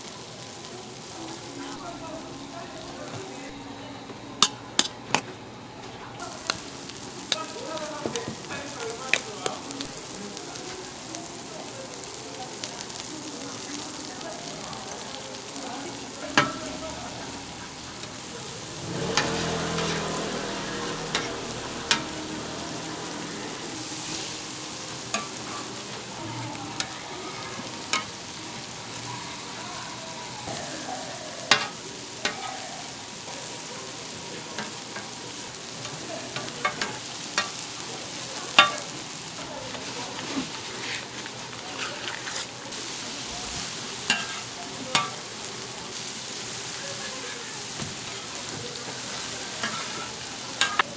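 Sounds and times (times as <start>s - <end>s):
food sizzling: 0.0s - 50.9s
metal utensils clinking: 15.8s - 28.3s, 31.4s - 32.9s, 36.2s - 37.6s, 38.5s - 39.0s, 44.0s - 45.2s, 47.2s - 50.9s.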